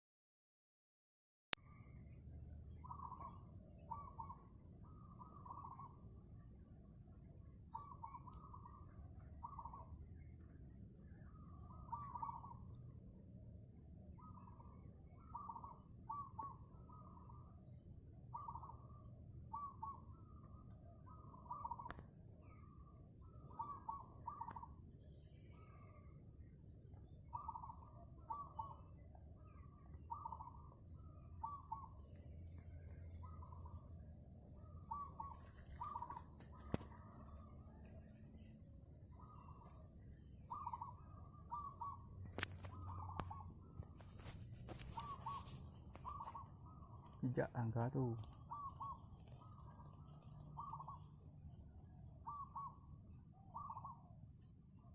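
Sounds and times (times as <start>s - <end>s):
dove cooing: 2.8s - 6.1s, 7.7s - 10.0s, 11.3s - 12.8s, 14.2s - 17.5s, 18.3s - 24.8s, 27.3s - 33.8s, 34.6s - 38.2s, 39.1s - 39.8s, 40.4s - 51.0s, 52.2s - 54.1s.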